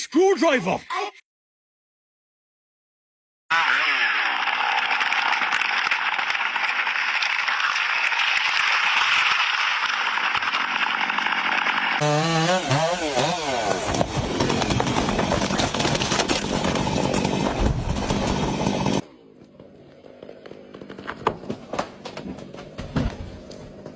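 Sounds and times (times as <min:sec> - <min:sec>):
chainsaw cutting wood: 0:04.8 - 0:19.0.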